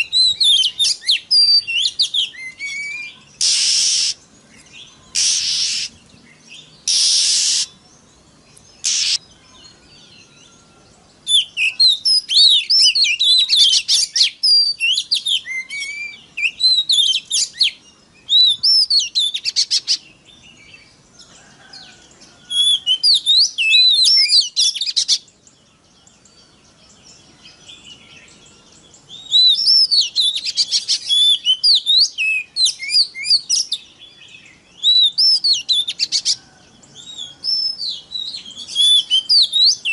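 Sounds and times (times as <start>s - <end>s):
bird singing whistled phrases: 0.0s - 7.8s, 8.8s - 20.0s, 22.4s - 25.3s, 27.5s - 36.4s, 37.0s - 39.9s
harsh rasping bird calls: 0.0s - 7.8s, 8.8s - 9.4s.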